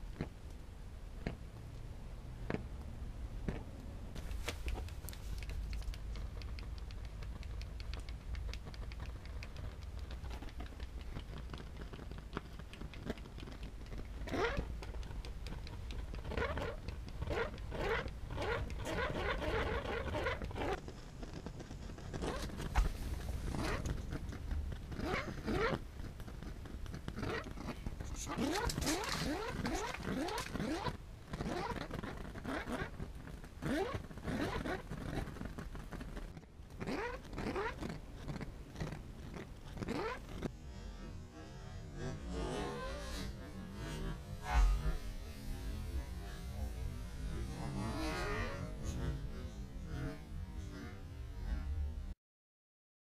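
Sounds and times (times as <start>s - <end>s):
crackles: 0.0s - 52.1s
low rumble: 40.5s - 52.2s.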